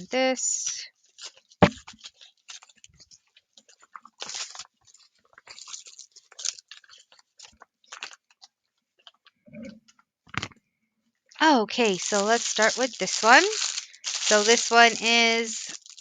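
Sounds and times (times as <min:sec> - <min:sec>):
plastic bags crinkling: 0:01.0 - 0:08.4, 0:11.4 - 0:16.0.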